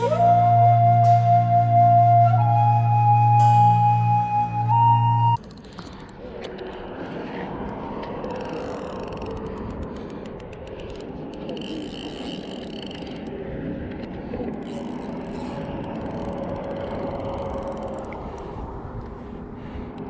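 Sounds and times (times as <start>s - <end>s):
fishing reel clicking: 8.2s - 13.3s, 14.6s - 18.4s.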